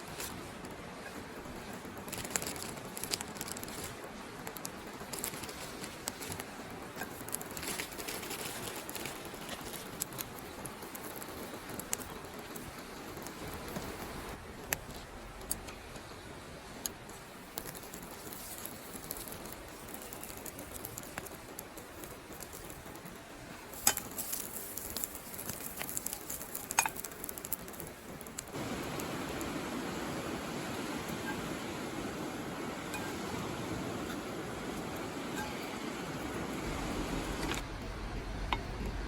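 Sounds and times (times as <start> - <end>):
campfire crackling: 0.0 - 39.0
steady fire hiss: 0.0 - 39.0
sharp fire pops: 17.5 - 31.8.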